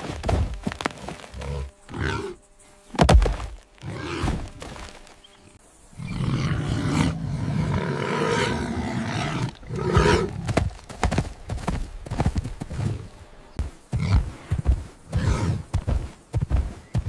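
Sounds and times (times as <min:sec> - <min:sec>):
large animal growling roar: 0:06.0 - 0:10.5.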